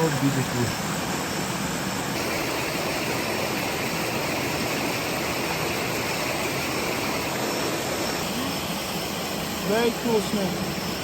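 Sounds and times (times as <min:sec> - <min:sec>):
stream rushing: 0:00.0 - 0:11.0.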